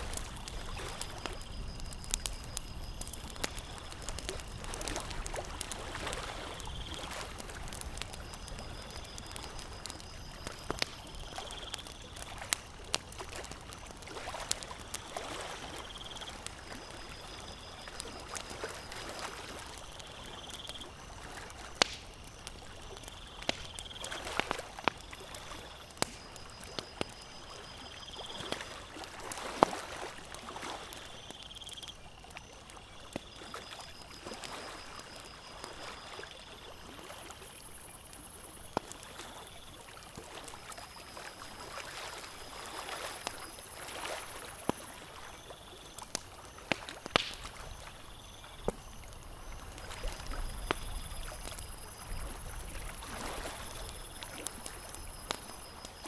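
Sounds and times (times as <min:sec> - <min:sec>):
campfire crackling and popping: 0:00.0 - 0:56.0
lake water lapping: 0:03.0 - 0:09.9, 0:10.5 - 0:20.4, 0:27.4 - 0:31.1, 0:32.7 - 0:55.9.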